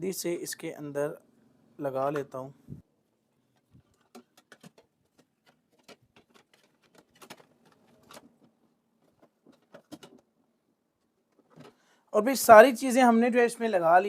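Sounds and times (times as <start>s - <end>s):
faint clicks and taps: 3.4s - 10.3s.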